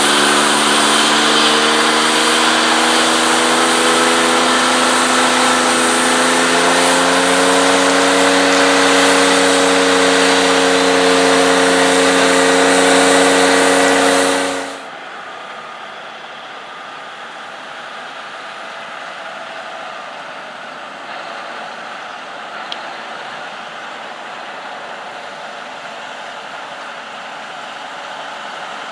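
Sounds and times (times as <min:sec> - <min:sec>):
machine hiss: 0:00.0 - 0:14.9
large diesel engine running: 0:00.0 - 0:28.9.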